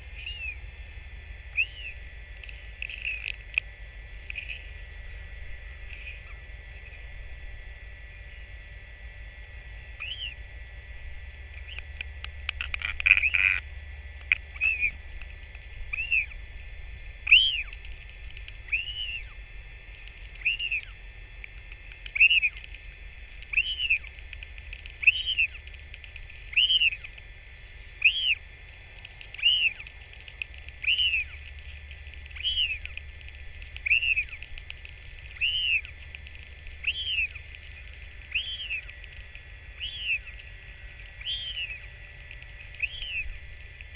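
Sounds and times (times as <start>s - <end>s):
bird chirping: 0.1s - 0.6s, 1.5s - 3.4s, 4.2s - 4.7s, 10.0s - 10.4s, 11.5s - 11.9s, 12.5s - 13.6s, 14.3s - 15.0s, 15.9s - 16.4s, 17.2s - 17.8s, 18.6s - 19.4s, 20.3s - 21.0s, 22.0s - 22.7s, 23.4s - 24.1s, 24.8s - 25.8s, 26.4s - 27.2s, 28.0s - 28.4s, 29.3s - 30.0s, 30.7s - 31.4s, 32.2s - 33.0s, 33.7s - 34.6s, 35.2s - 36.1s, 36.7s - 43.4s.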